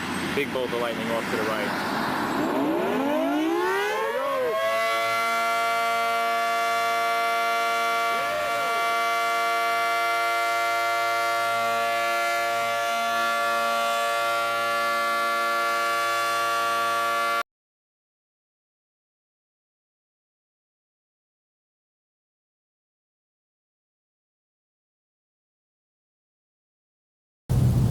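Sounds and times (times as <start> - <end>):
warning siren: 0.0 - 17.4.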